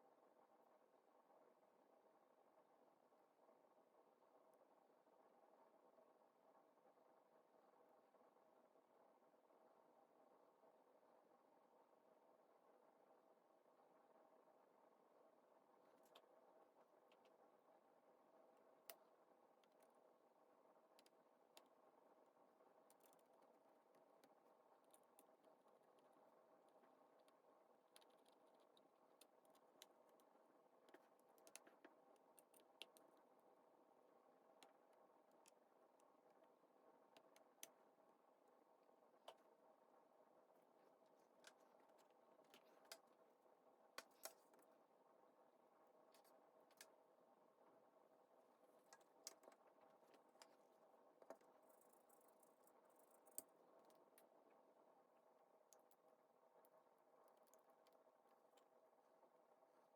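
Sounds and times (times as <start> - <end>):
low steady hum: 0.0 - 59.9
faint light clicks and ticks: 30.9 - 33.3.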